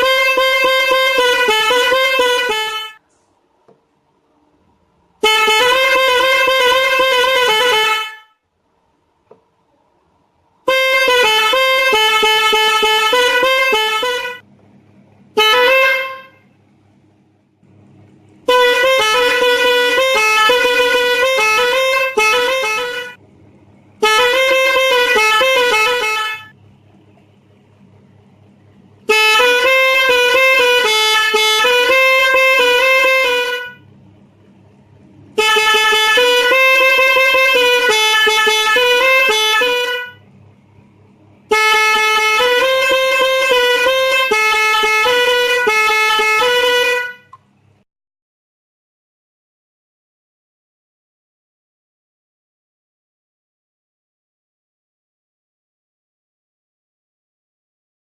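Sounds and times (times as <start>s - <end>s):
loud melody horn playing tunes: 0.0s - 3.0s, 5.2s - 8.3s, 10.7s - 14.4s, 15.4s - 16.4s, 18.4s - 23.2s, 24.0s - 26.5s, 29.1s - 33.8s, 35.4s - 40.2s, 41.5s - 47.3s.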